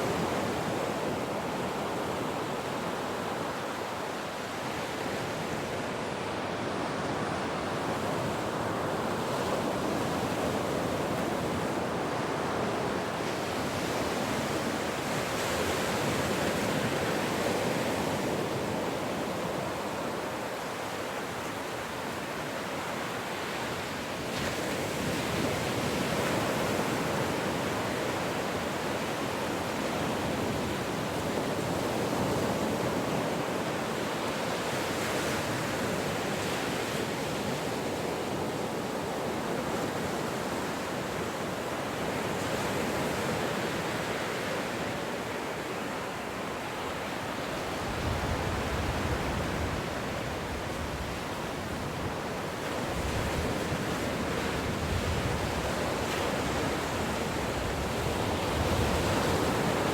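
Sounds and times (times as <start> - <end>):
ocean waves breaking: 41.8 - 59.9.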